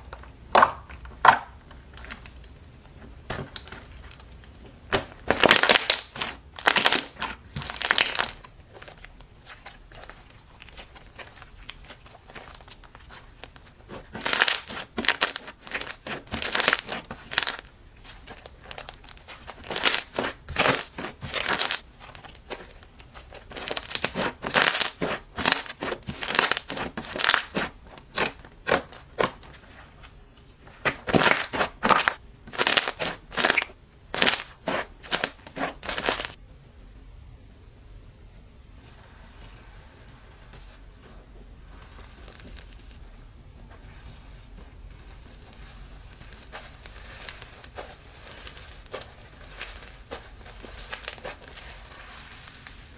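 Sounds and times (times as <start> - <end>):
slime squelching: 0.0 - 36.4, 38.9 - 52.9.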